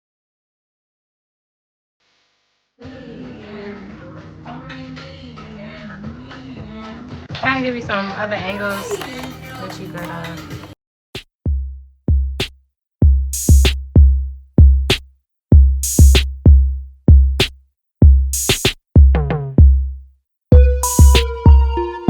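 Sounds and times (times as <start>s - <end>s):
electronic beat: 8.5s - 22.0s
sustained synth chords: 20.6s - 22.0s.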